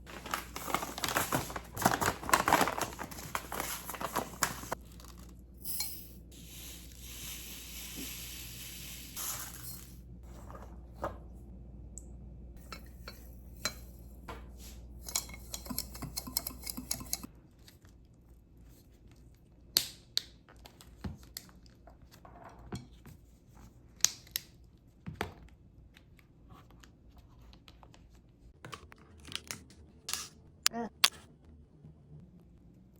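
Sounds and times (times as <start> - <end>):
household items clicking and clinking: 0.0 - 10.9, 15.0 - 17.3.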